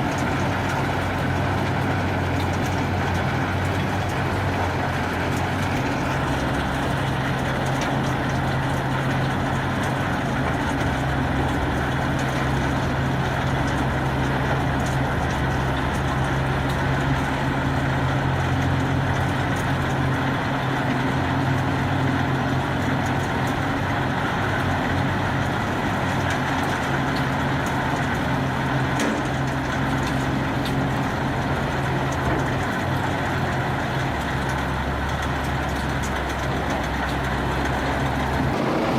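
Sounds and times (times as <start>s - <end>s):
wood shredder running: 0.0s - 38.9s.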